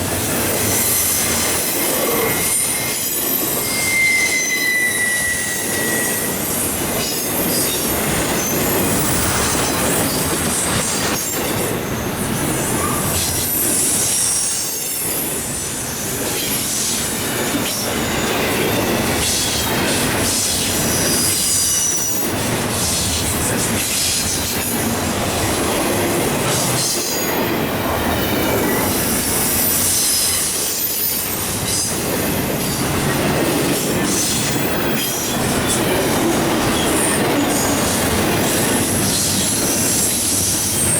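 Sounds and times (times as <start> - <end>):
freight train wheels rumbling: 0.0 - 40.9
high wheel squeal: 0.5 - 10.3
train wheels clacking: 16.1 - 40.9.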